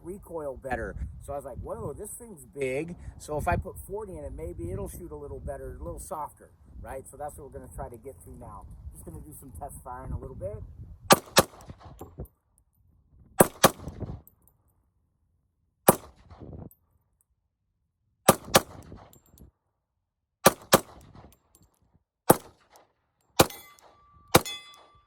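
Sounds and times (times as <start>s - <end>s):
pistol shots with echo: 11.1s - 12.0s, 13.4s - 14.1s, 15.9s - 16.4s, 18.3s - 19.2s, 20.4s - 21.3s, 22.3s - 22.8s, 23.4s - 25.0s.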